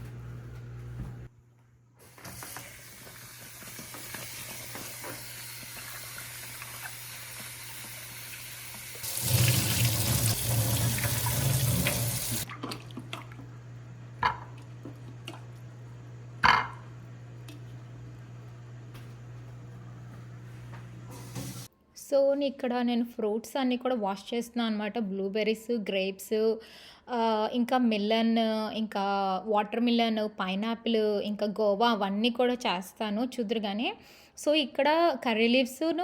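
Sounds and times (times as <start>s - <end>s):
tap running into sink: 2.1s - 7.6s, 9.0s - 13.4s, 21.1s - 21.7s.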